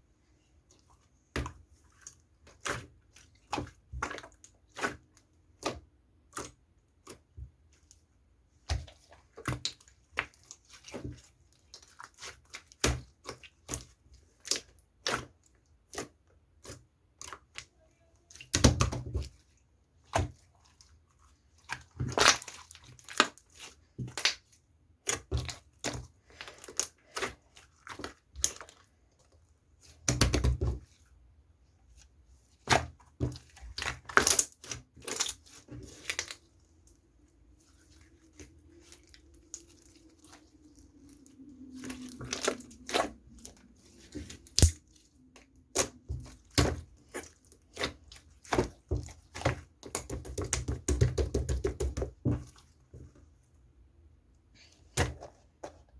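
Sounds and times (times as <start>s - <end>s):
close-up crunching and crackling: 8.7s - 30.9s, 31.9s - 52.8s.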